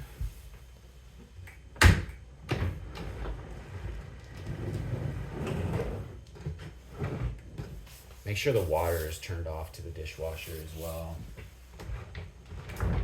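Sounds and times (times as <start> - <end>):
dishwasher sliding out rumble: 2.5 - 7.8, 11.8 - 13.0.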